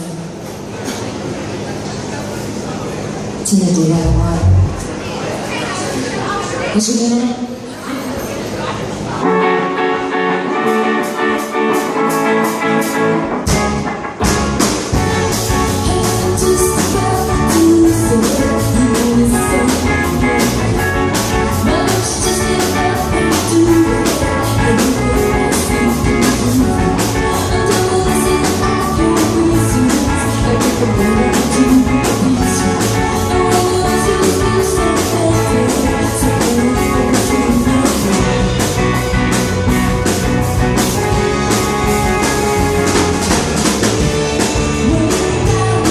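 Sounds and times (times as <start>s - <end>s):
rock band music: 3.7s - 5.0s, 9.2s - 45.9s.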